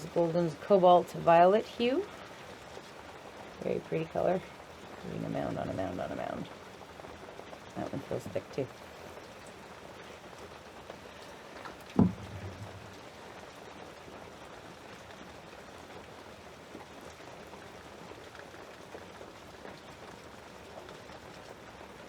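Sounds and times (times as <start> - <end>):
heavy rain hissing: 0.0 - 22.0
sharp knock: 12.0 - 13.0.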